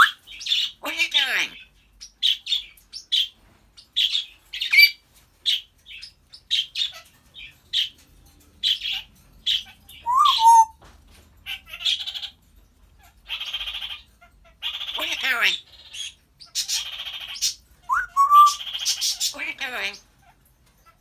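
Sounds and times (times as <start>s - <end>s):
parrot chirps and squawks: 0.0s - 3.3s, 4.0s - 7.2s, 8.6s - 10.7s, 11.5s - 12.4s, 13.0s - 21.0s
parrot whistle: 10.0s - 10.7s, 17.9s - 18.6s.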